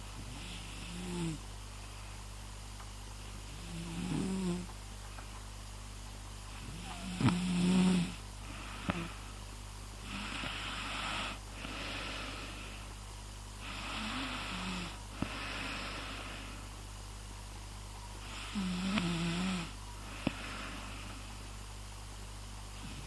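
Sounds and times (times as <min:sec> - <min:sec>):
breathy snores: 0:00.2 - 0:01.4, 0:03.5 - 0:04.7, 0:06.5 - 0:09.3, 0:10.0 - 0:12.8, 0:13.6 - 0:16.6, 0:18.2 - 0:21.2
loud pitched snore: 0:00.3 - 0:01.4, 0:03.6 - 0:04.7, 0:06.6 - 0:08.2, 0:18.3 - 0:19.7.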